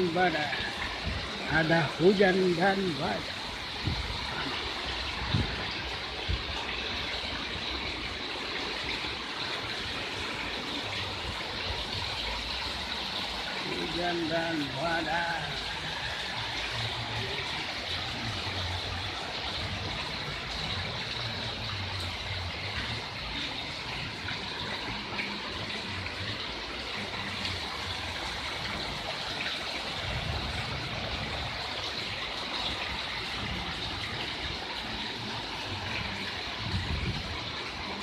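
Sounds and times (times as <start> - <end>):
heavy rain pouring: 0.0 - 38.0
wind gusts on microphone: 0.7 - 1.7, 3.6 - 7.1, 28.2 - 34.8, 35.7 - 38.0.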